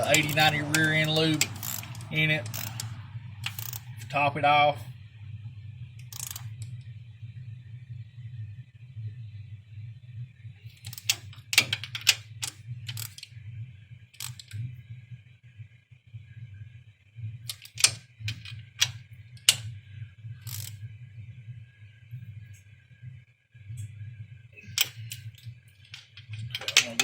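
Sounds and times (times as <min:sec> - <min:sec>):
wrench clicking on metal: 0:00.0 - 0:04.0, 0:06.0 - 0:06.6, 0:10.8 - 0:13.3, 0:14.2 - 0:14.6, 0:17.5 - 0:19.6, 0:20.4 - 0:20.7, 0:24.7 - 0:27.0
steady low hum: 0:00.0 - 0:27.0.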